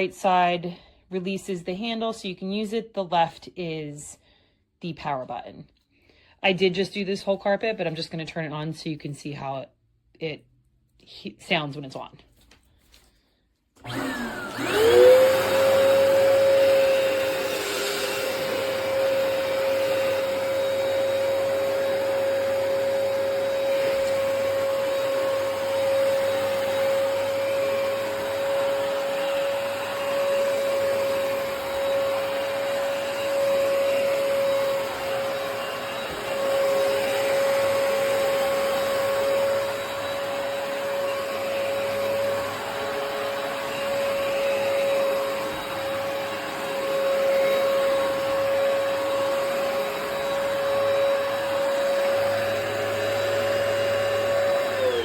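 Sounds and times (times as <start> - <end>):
carpet cleaner motor whine: 13.8 - 55.0.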